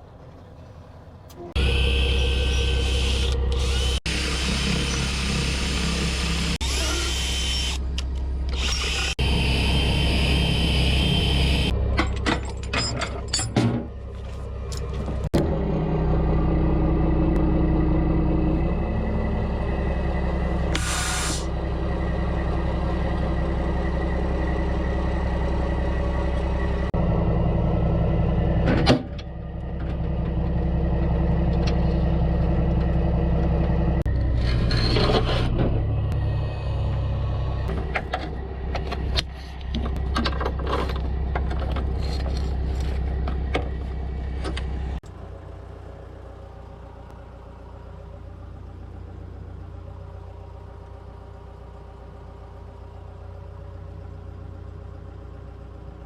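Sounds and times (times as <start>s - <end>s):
diesel truck engine running: 0.0s - 56.0s
air brake hisses: 20.8s - 21.5s.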